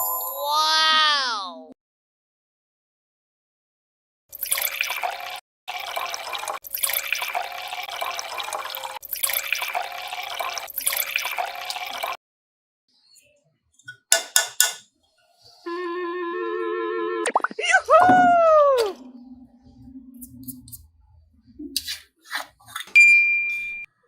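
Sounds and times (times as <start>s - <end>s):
running water: 4.3s - 12.2s.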